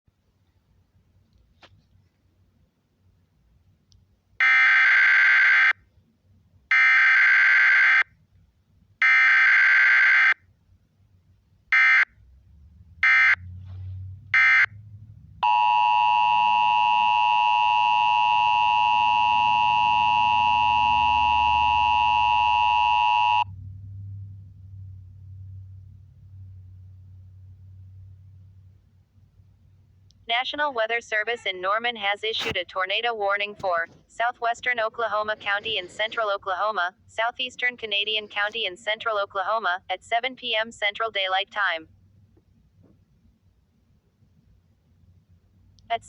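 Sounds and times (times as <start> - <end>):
two-tone attention signal: 15.4 - 23.5.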